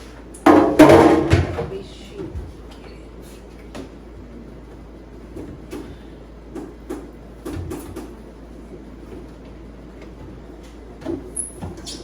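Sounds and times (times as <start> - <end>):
refrigerator shelves and drawers knocking: 0.5 - 1.8.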